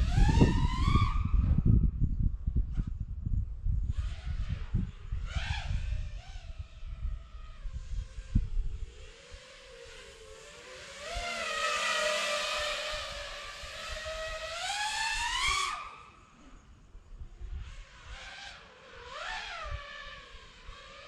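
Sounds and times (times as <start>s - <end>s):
quadcopter motors whining: 0.0s - 21.0s.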